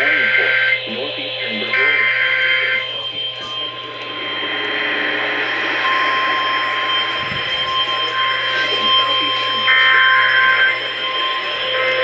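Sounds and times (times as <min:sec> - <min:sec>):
loud radio static hiss: 0:00.0 - 0:05.3
two-tone data signal burst: 0:00.0 - 0:12.0.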